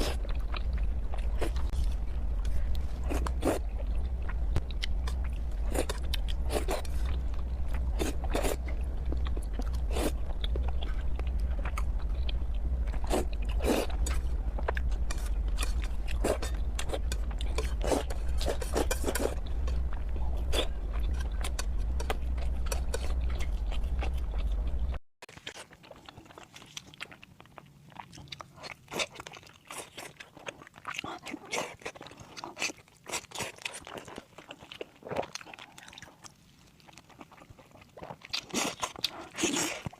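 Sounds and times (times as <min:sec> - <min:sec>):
steady low hum: 0:00.0 - 0:25.0
person chewing food: 0:00.0 - 0:39.9.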